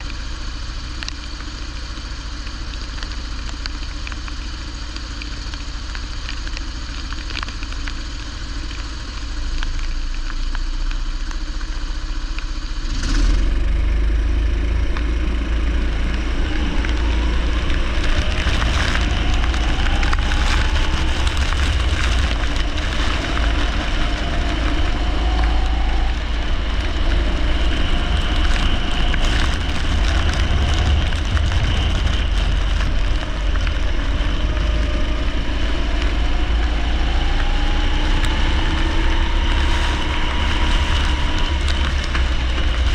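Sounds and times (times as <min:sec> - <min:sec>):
rain and spray hissing: 0:00.0 - 0:42.9
kart engines running: 0:13.1 - 0:42.9.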